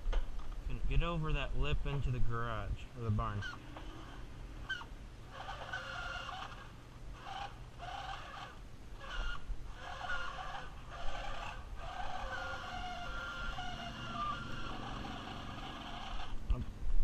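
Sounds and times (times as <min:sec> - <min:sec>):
toy car motor whining and grinding: 0:03.4 - 0:16.4.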